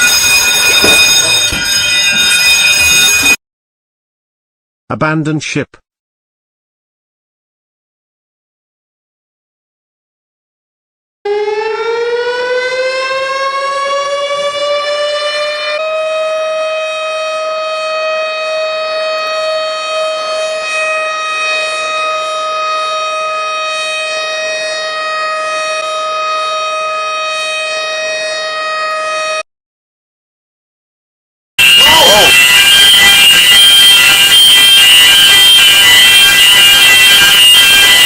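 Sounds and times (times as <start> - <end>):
ship's alarm siren: 0.0 - 3.4, 11.2 - 29.5, 31.6 - 38.0.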